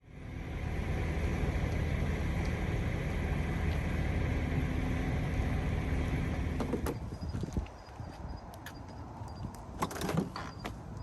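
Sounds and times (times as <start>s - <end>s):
low rumble with hiss: 0.0s - 7.6s.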